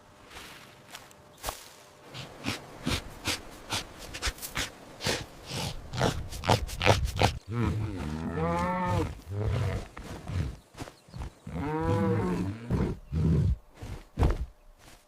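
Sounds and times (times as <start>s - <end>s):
deep rumbling grunts: 2.1s - 10.6s
big cat roaring: 11.5s - 13.6s.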